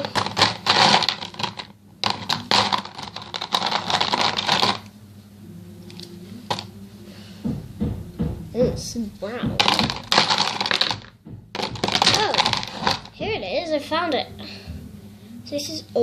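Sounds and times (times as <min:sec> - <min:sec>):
paint bottles clattering: 0:00.0 - 0:04.9, 0:09.6 - 0:13.2.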